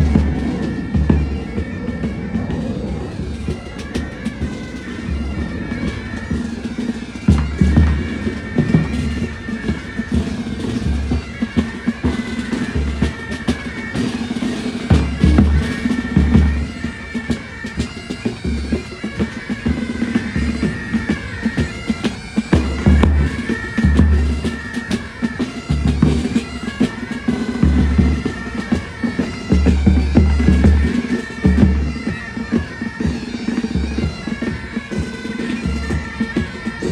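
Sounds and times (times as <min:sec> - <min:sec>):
bagpipes playing melody: 0:00.0 - 0:36.9
snare drumming: 0:06.2 - 0:11.9, 0:22.5 - 0:36.8.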